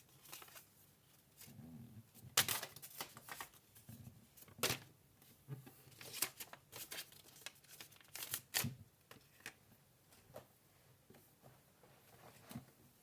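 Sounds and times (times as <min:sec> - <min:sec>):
paper crackling and rustling: 0:00.1 - 0:00.8, 0:02.4 - 0:03.6, 0:05.9 - 0:09.6.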